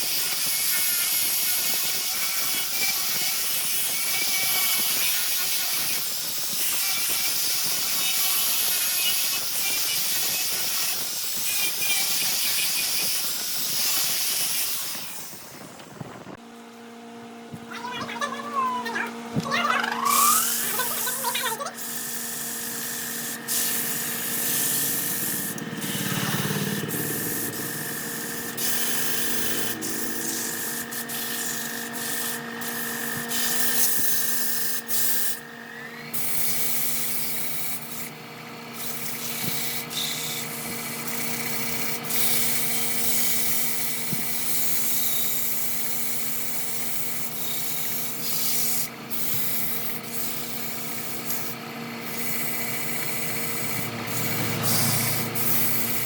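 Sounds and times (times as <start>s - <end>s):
sanding wood on a lathe: 0.0s - 15.4s, 20.2s - 35.4s, 36.1s - 56.0s
lathe motor hum: 19.0s - 56.0s.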